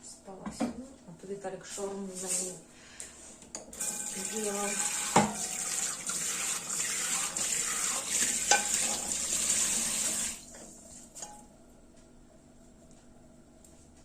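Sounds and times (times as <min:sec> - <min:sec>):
tap running into sink: 0:03.8 - 0:10.3.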